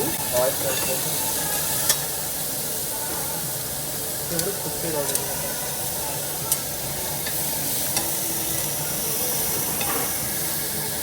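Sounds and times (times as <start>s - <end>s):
steady sizzling hiss: 0.0s - 11.0s.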